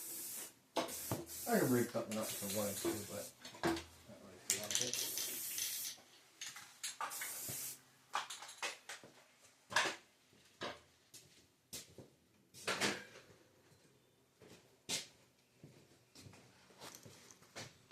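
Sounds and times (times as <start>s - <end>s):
brief hiss-like rush: 0.0s - 3.4s, 7.0s - 7.8s.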